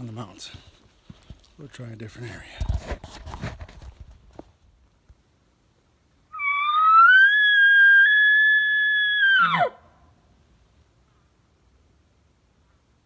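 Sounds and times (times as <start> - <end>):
elk bugling: 6.3 - 9.8.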